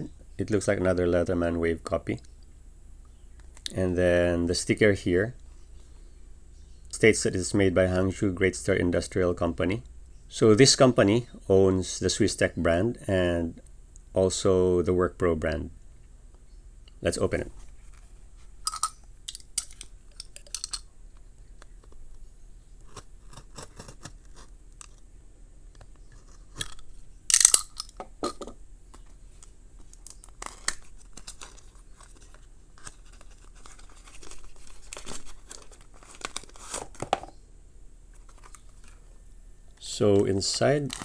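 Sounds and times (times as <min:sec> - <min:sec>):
packaging tearing and crinkling: 0:22.8 - 0:25.0, 0:29.8 - 0:37.3, 0:40.7 - 0:41.0.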